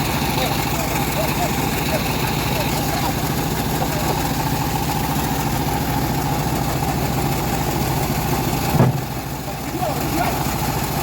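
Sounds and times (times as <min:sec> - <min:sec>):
sawmill engine running: 0:00.0 - 0:11.0
thump: 0:08.7 - 0:09.1.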